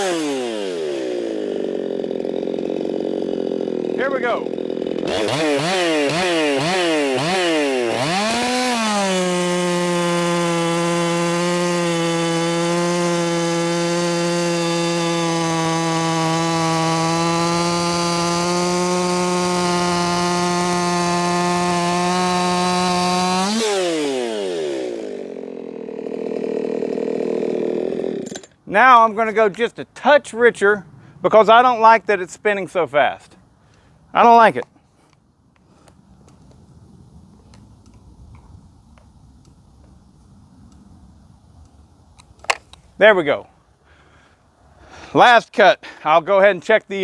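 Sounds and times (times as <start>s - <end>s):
chainsaw cutting wood: 0.0s - 28.6s.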